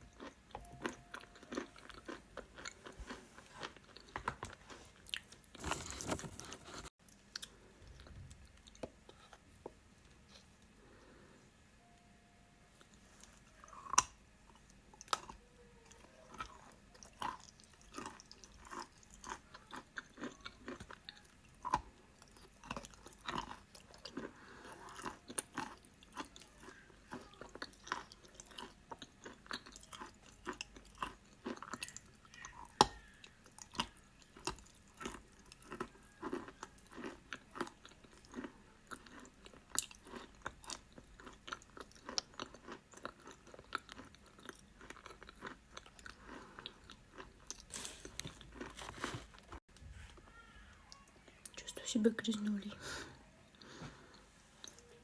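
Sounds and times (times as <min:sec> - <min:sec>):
chalk being chewed crunching: 0:12.8 - 0:49.6.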